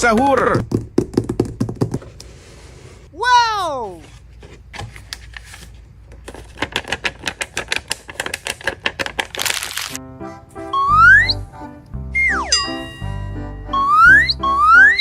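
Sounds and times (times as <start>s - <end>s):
jingly tune with rising whistle: 10.7s - 11.5s, 12.1s - 15.0s.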